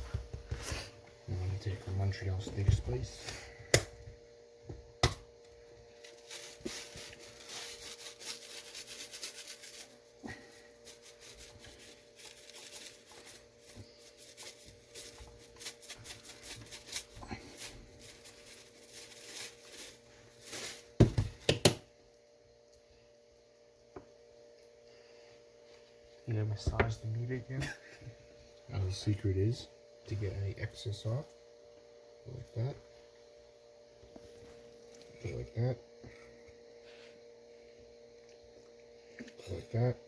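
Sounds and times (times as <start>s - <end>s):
handling rustle: 5.9s - 21.0s
spice shaker rattling: 6.2s - 10.0s.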